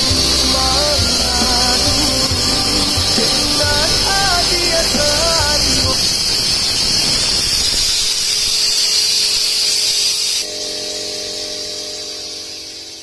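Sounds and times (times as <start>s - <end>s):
sustained music tones: 0.0s - 7.0s, 10.4s - 13.0s
loud spraying hiss: 0.0s - 13.0s.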